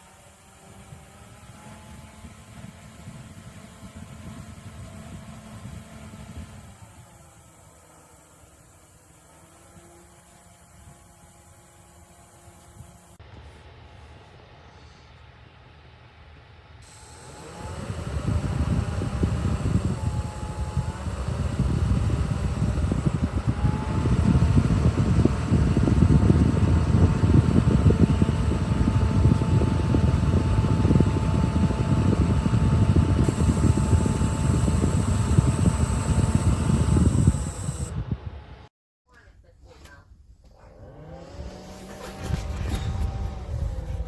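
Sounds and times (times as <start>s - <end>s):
fan motor whine: 0.0s - 38.7s, 40.7s - 44.0s
air blowing rumble: 16.9s - 38.7s.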